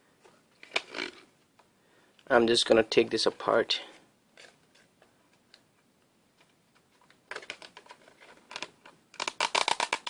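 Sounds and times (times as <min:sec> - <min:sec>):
packaging crackling rustles: 0:06.9 - 0:10.0.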